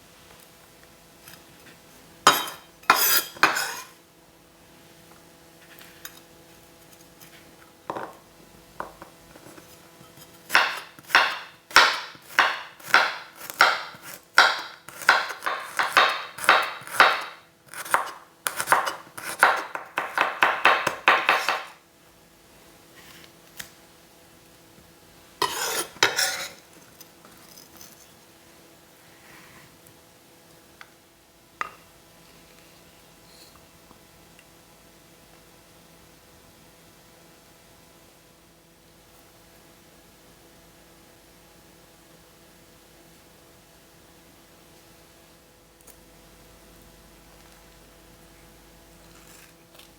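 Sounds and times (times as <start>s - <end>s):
kitchen utensil sharp strokes: 2.3s - 4.0s, 10.2s - 21.8s, 25.4s - 26.7s.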